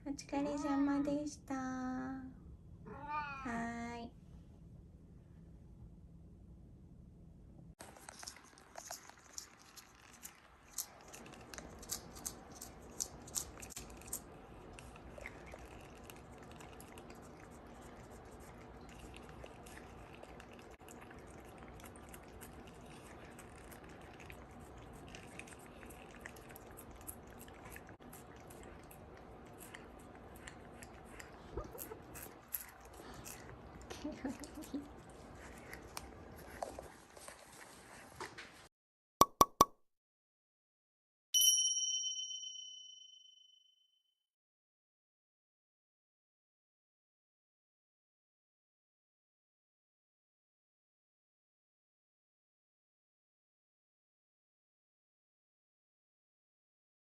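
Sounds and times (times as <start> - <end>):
cat chewing crunchily: 7.8 - 38.4.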